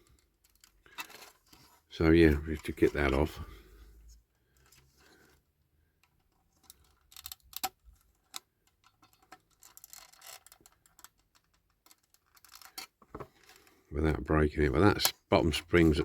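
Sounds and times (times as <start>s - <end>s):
tool clicking and scraping on model car: 0.0s - 3.2s, 4.4s - 13.8s.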